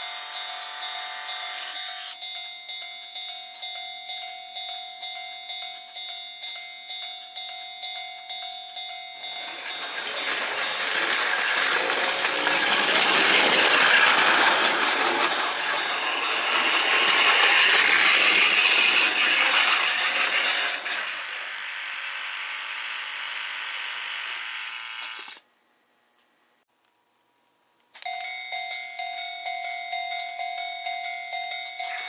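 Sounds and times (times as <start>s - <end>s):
model train clattering on track: 9.3s - 21.8s.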